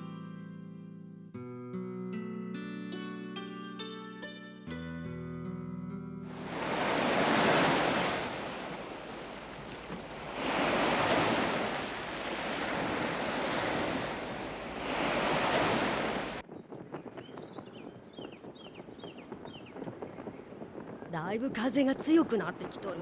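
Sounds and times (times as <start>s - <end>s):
strong wind gusts: 6.3s - 23.0s.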